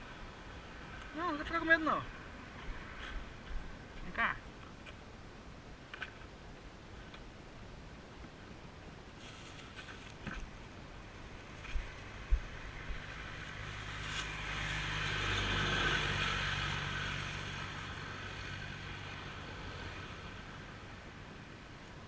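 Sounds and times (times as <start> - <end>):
vehicle passing by: 12.5 - 20.7.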